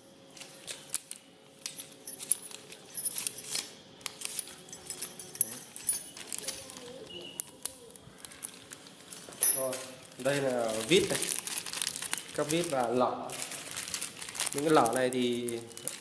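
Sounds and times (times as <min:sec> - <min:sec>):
metal bits clinking in plastic case: 0:00.4 - 0:16.0.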